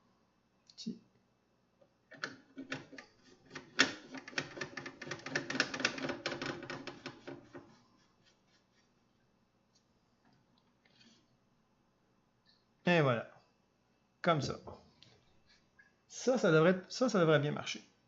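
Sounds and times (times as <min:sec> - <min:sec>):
computer parts clicking and rattling: 0:02.1 - 0:07.6.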